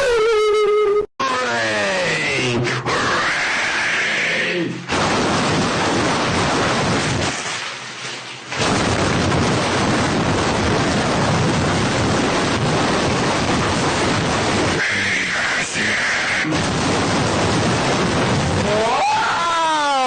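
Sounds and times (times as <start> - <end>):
loud rushing noise: 8.5 - 18.9.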